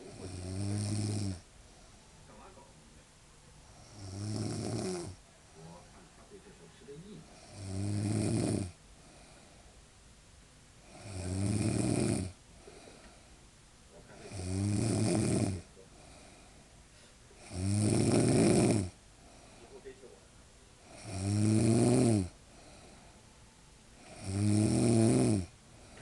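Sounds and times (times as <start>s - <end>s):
woman snoring: 0.0s - 1.4s, 3.8s - 5.2s, 7.4s - 8.8s, 10.8s - 12.8s, 14.3s - 15.6s, 17.4s - 19.0s, 20.9s - 22.4s, 24.0s - 25.5s
quiet breathing: 0.0s - 10.1s, 10.7s - 26.0s.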